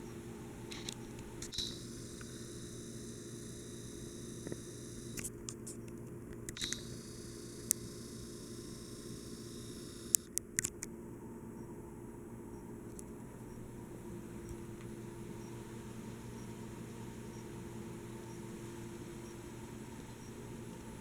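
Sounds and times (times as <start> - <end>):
ceiling fan humming: 0.0 - 21.0
sharp clicks: 4.4 - 7.0, 10.0 - 10.9.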